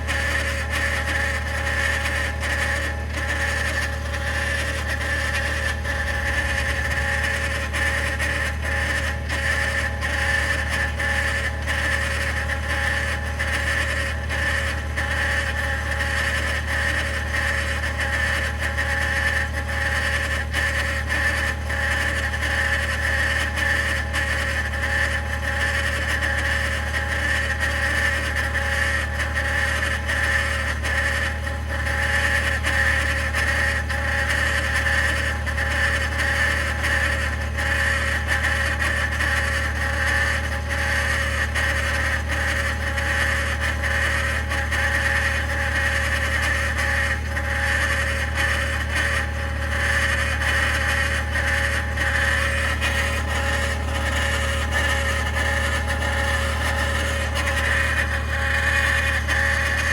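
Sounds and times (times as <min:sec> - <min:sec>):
truck engine running: 0:51.6 - 0:59.9.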